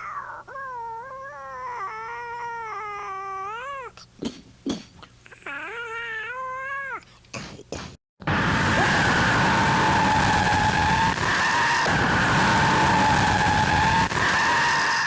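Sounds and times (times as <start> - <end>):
cat-like yowls: 0.0 - 4.0, 5.3 - 7.0.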